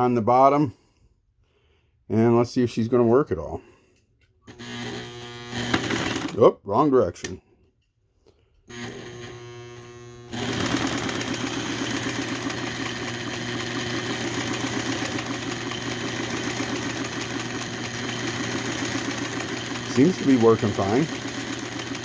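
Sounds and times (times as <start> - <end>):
sewing machine running: 4.5 - 6.4, 8.7 - 22.0.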